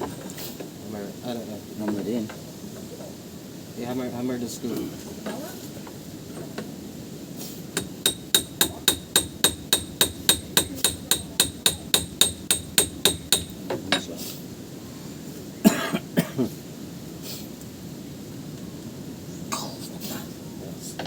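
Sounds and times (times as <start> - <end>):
hammer tapping metal: 7.8 - 14.0.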